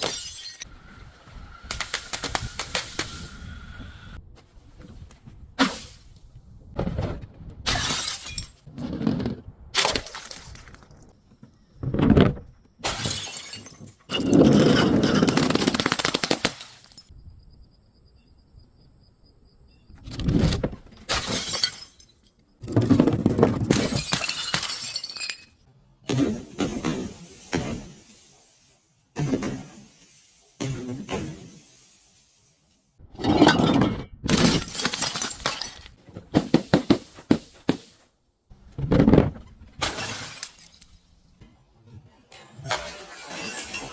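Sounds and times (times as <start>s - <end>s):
glass bottles smashing: 0.0s - 0.7s, 7.7s - 8.7s, 12.8s - 17.1s, 21.1s - 22.4s, 23.6s - 25.6s, 33.3s - 37.1s, 39.8s - 41.1s, 42.8s - 43.9s.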